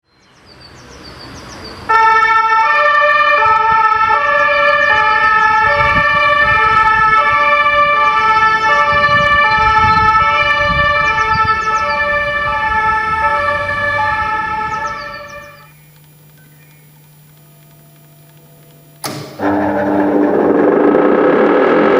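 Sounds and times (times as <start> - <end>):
two-tone siren: 1.9 - 15.8, 17.4 - 21.9.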